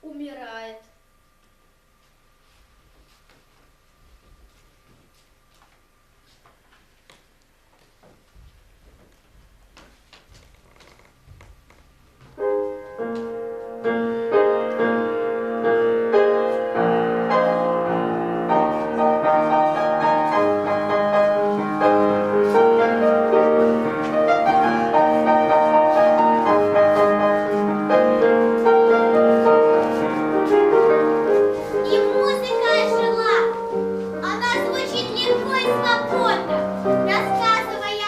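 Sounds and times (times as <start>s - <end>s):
piano music: 12.4s - 38.0s.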